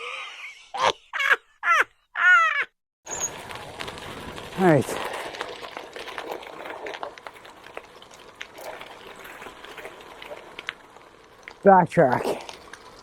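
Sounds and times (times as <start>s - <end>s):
gravel crunching: 3.1s - 13.0s.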